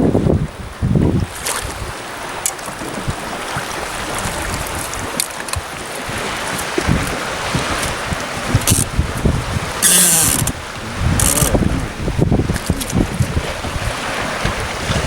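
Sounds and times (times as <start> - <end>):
water lapping against boat: 0.0 - 15.0.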